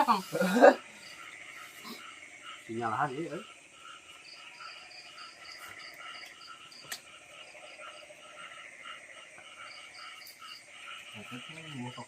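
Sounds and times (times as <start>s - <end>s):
crickets chirping: 0.0s - 12.0s
frogs chirping: 0.0s - 12.0s.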